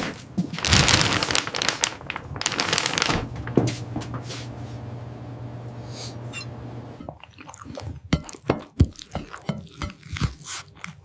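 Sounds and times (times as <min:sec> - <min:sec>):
plastic packaging crinkling: 0:00.0 - 0:04.2.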